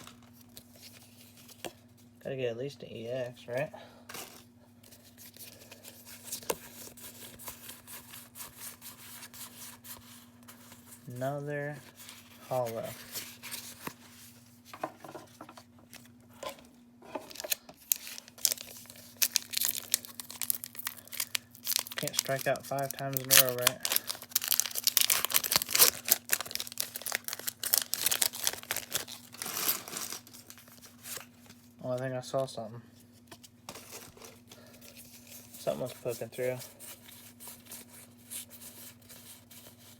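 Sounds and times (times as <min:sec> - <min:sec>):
faint steady hum: 0:00.0 - 0:39.9
foil wrapper crinkling and tearing: 0:17.2 - 0:31.5
cards rustling when flipped: 0:17.3 - 0:31.6.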